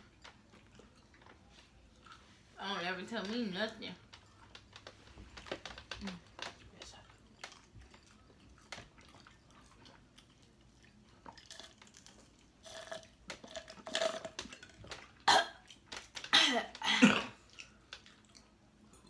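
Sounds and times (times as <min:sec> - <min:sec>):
crunchy chewing: 0:04.0 - 0:16.3.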